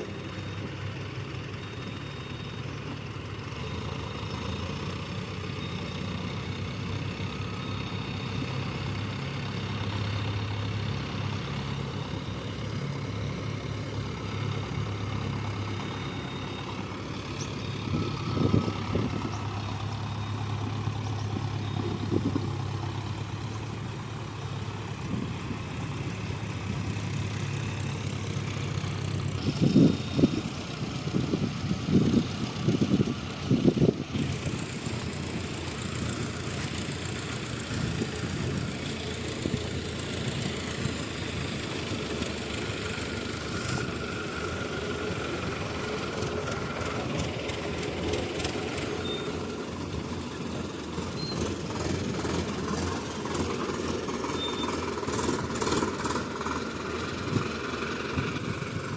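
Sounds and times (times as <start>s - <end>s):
heavy machinery diesel engines: 0.0s - 58.9s.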